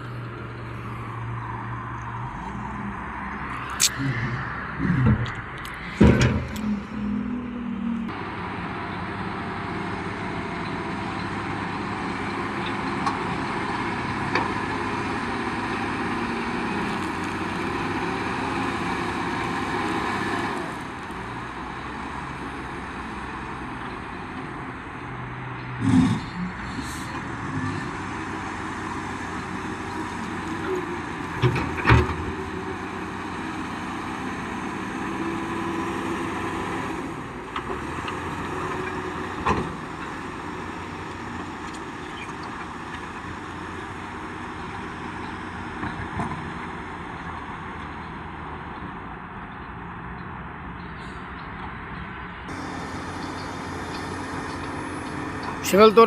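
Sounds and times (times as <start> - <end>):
vehicle engine running: 52.5 - 56.0.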